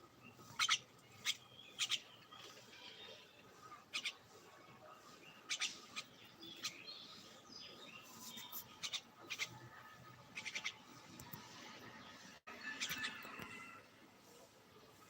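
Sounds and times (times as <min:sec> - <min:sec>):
small birds chirping: 0:00.0 - 0:13.8
faint background noise: 0:00.0 - 0:15.0.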